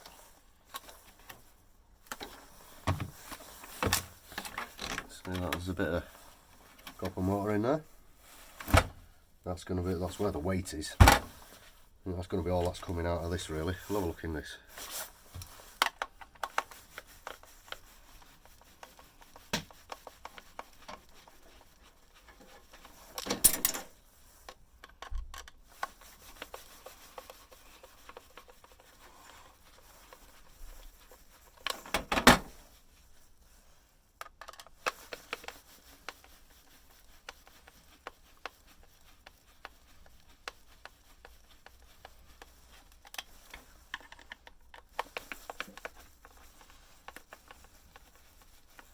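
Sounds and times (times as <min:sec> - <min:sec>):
plastic and metal parts clicking: 0:24.8 - 0:25.6, 0:34.2 - 0:35.5, 0:43.0 - 0:46.0.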